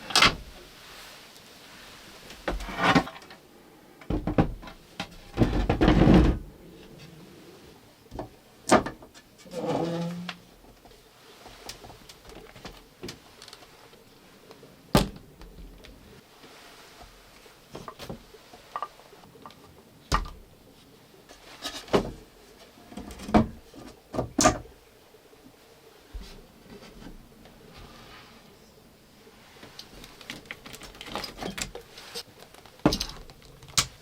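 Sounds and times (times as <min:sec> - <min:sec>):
sharp knocks and clunks: 0:04.1 - 0:06.5.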